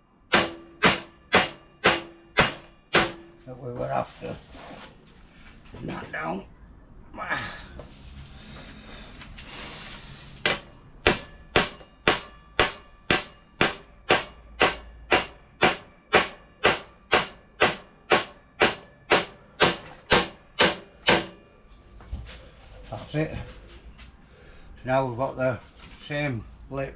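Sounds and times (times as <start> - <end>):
hammer striking sheet steel: 0.3 - 3.5, 10.4 - 21.5.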